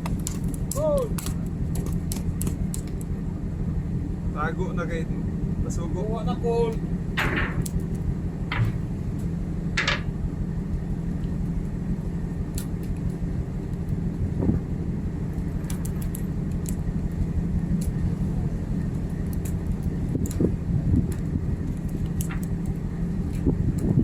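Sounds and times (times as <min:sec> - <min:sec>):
ship machinery drone: 0:00.0 - 0:24.0
clicks and knocks: 0:08.5 - 0:08.9.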